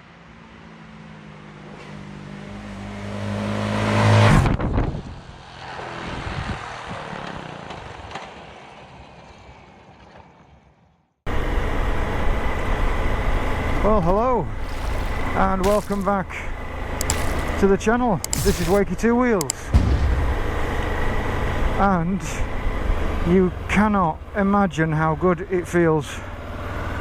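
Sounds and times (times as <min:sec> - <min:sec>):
engine and wind noise: 0:00.0 - 0:27.0
vehicle passing by: 0:00.8 - 0:07.6.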